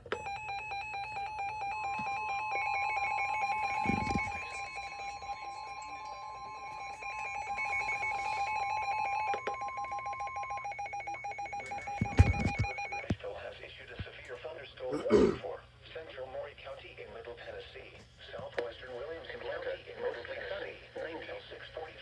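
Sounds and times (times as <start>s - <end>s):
steady alarm tone: 0.0s - 13.2s
trilling electronic alert: 0.2s - 13.0s.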